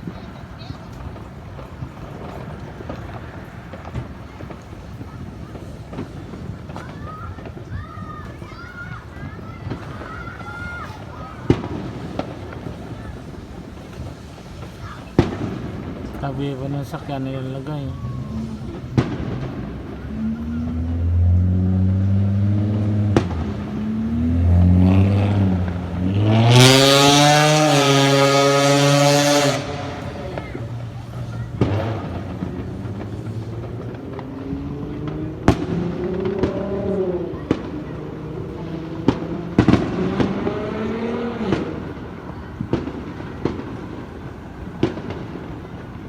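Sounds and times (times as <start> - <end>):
firecrackers banging: 0.0 - 46.0
vehicle engine revving: 19.4 - 41.9.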